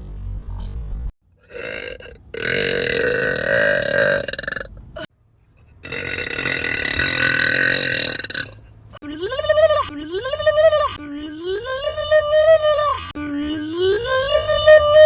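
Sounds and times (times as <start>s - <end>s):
woman belching slowed down: 1.4s - 5.1s, 5.8s - 8.6s.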